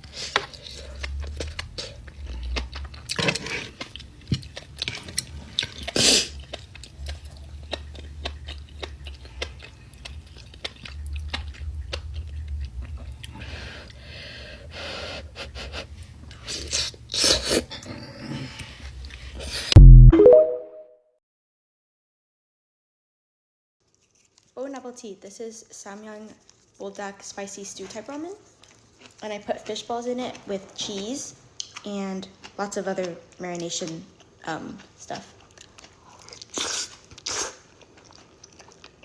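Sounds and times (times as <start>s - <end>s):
person chewing noodles: 0.0s - 19.7s, 23.9s - 24.6s, 34.2s - 39.0s.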